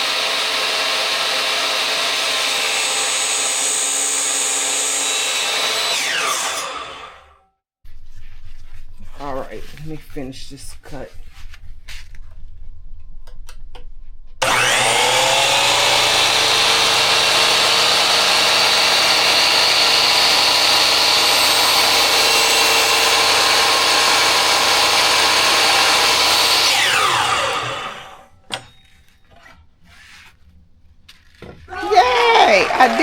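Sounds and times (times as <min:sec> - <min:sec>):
saw cutting wood board: 0:00.0 - 0:07.4, 0:14.4 - 0:28.6
miter saw motor whine: 0:14.4 - 0:28.3.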